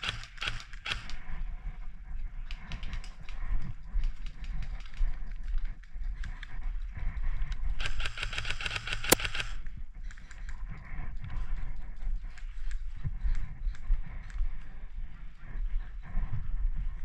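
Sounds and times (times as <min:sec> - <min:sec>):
rapid airsoft gunfire: 0:00.0 - 0:01.2, 0:07.8 - 0:09.6
footsteps and gear rustling: 0:00.0 - 0:17.0
wind rumble on microphone: 0:00.0 - 0:17.0.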